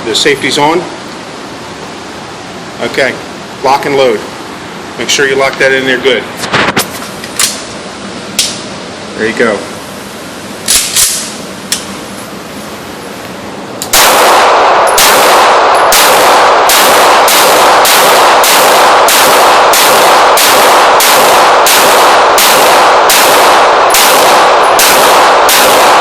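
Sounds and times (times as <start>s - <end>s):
pistol shots: 13.9s - 26.0s.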